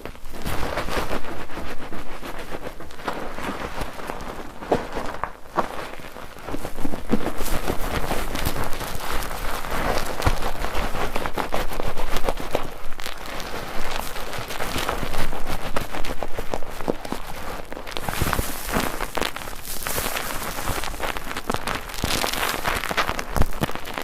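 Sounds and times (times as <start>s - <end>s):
soap lather squishing and crackling: 0.4s - 24.0s.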